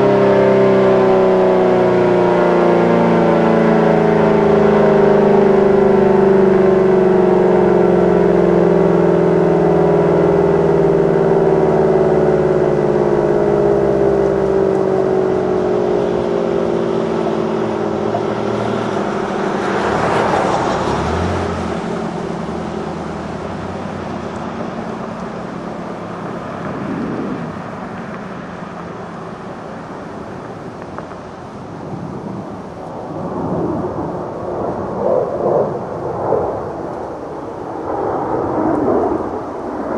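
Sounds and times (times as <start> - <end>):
warning siren winding down: 0.0 - 30.2
car passing: 0.0 - 39.9.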